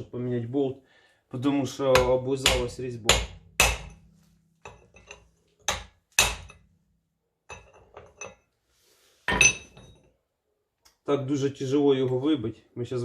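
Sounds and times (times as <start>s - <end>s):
hammer striking steel: 1.9s - 6.6s.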